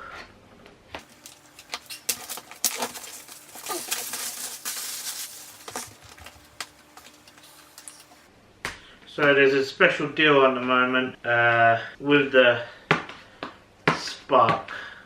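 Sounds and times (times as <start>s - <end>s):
rustling of cardboard and wrapping: 1.0s - 8.3s.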